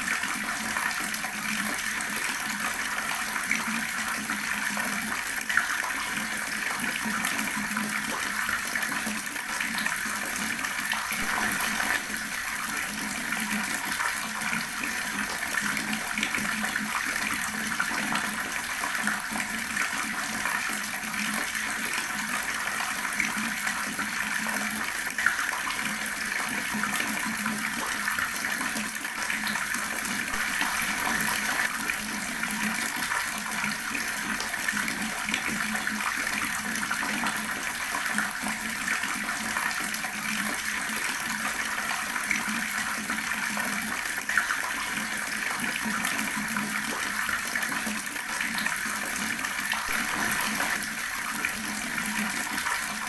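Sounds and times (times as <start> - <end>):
water tap running: 6.9 - 24.8, 26.8 - 39.5, 45.7 - 53.0.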